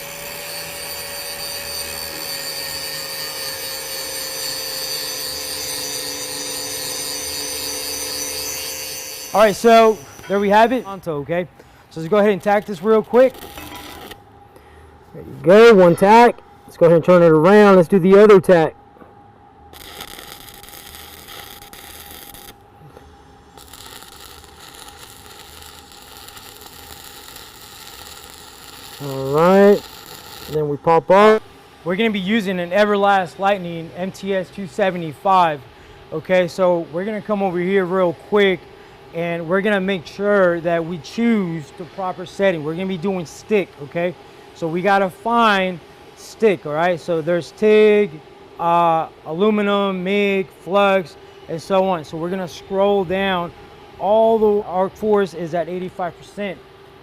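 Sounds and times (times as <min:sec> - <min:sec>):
angle grinder grinding metal: 0:00.0 - 0:11.0, 0:23.6 - 0:30.6
welding arc crackling and hissing: 0:00.0 - 0:14.2, 0:19.7 - 0:56.6.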